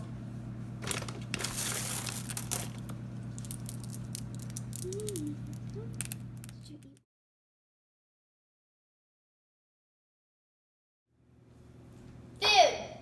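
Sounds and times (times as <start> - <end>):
low electrical hum: 0.0 - 7.0, 11.2 - 13.0
candies rattling and crinkling: 0.8 - 6.9.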